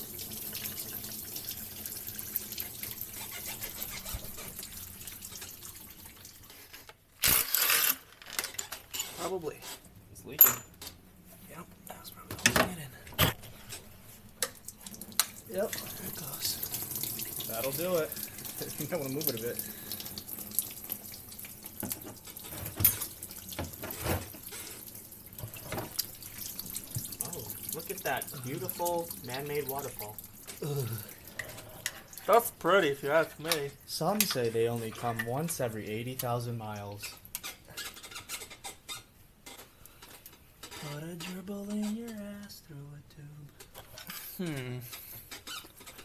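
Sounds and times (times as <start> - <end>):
coolant trickling and spattering: 0.0 - 6.9, 13.6 - 40.8
liquid dripping: 14.2 - 38.8.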